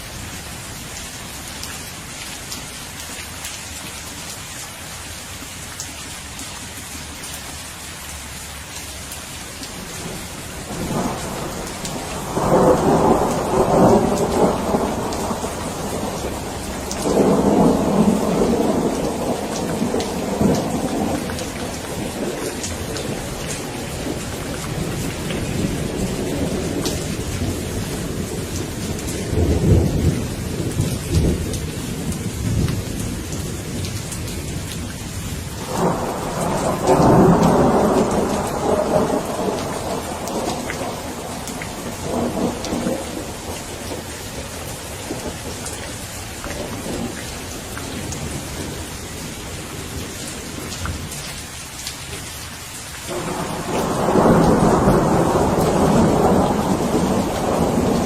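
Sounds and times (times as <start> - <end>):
steady rain falling: 0.0 - 58.0
rolling thunder: 10.0 - 34.0, 35.6 - 51.2, 53.1 - 58.0.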